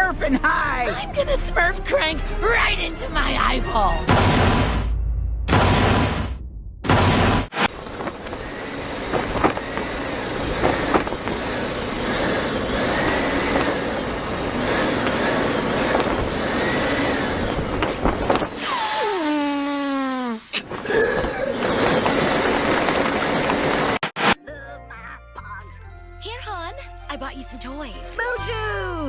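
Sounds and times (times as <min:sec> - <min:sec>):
vehicle noise: 0:07.5 - 0:24.4.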